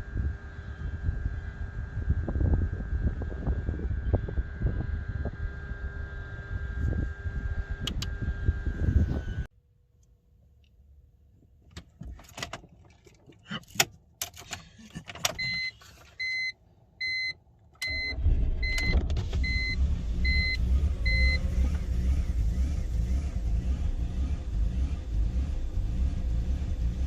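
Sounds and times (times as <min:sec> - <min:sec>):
car engine starting and idling: 0:11.6 - 0:27.0.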